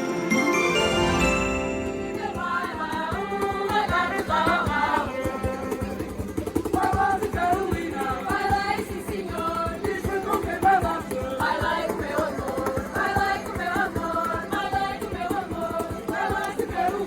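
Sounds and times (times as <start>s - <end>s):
bell-like chiming: 0.0s - 2.9s
choir singing: 0.0s - 17.0s.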